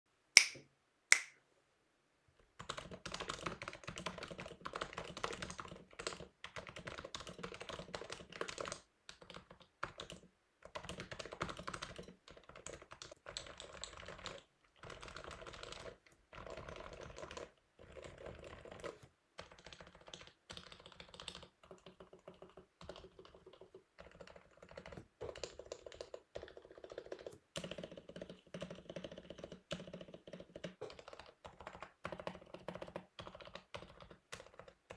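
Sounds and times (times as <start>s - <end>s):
loud sharp clicks: 0.4s - 1.3s
keyboard typing: 2.6s - 34.9s.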